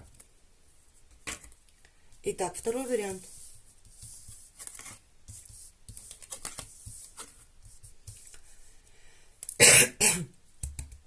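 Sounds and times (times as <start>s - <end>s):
woman coughing: 9.6s - 10.3s.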